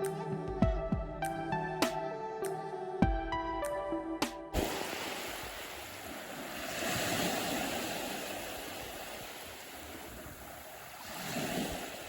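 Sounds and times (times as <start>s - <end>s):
sea waves washing on shore: 4.6s - 12.0s.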